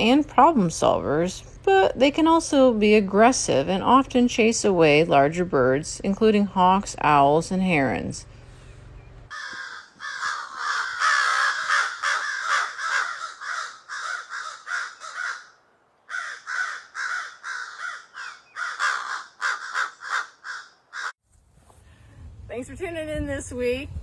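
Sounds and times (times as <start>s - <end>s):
crows cawing: 9.3s - 21.2s.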